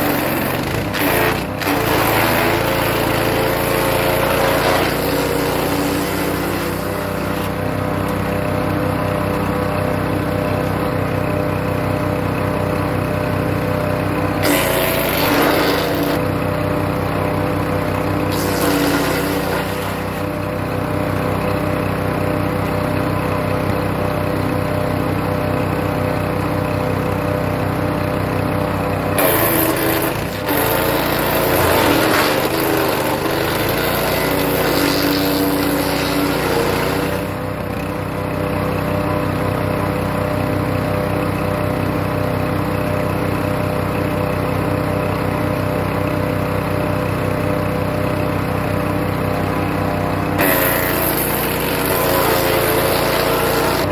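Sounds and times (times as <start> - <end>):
branches grinding in chipper: 0.0 - 8.6, 14.3 - 16.2, 17.9 - 20.6, 29.2 - 37.4, 47.4 - 53.9
wood chipper engine running: 0.0 - 53.9.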